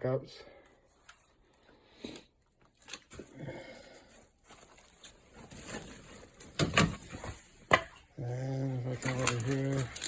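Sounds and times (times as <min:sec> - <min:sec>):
rustling: 0:02.7 - 0:07.8, 0:08.8 - 0:10.0.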